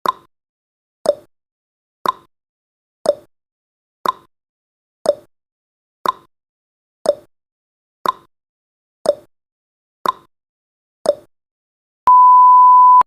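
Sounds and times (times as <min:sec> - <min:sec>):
steady electronic beep: 0:12.1 - 0:13.0.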